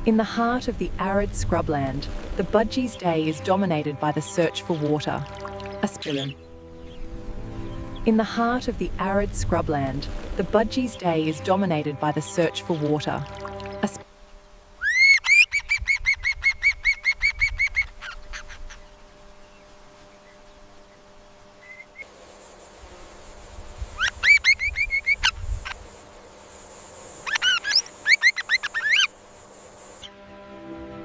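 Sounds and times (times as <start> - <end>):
budgerigar chirping: 14.8 - 18.8, 27.3 - 29.1.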